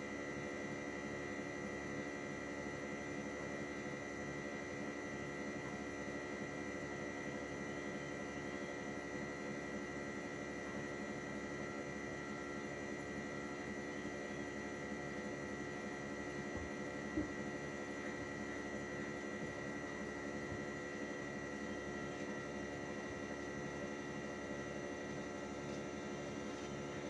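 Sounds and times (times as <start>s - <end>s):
air conditioner unit humming: 0.0s - 27.0s.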